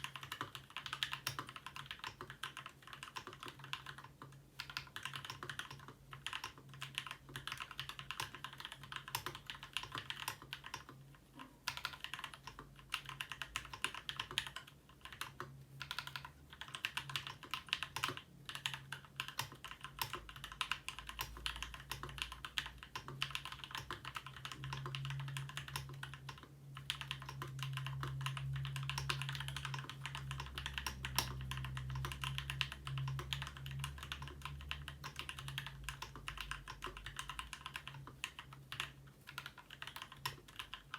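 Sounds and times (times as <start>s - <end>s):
fast mechanical keyboard typing: 0.0s - 40.9s.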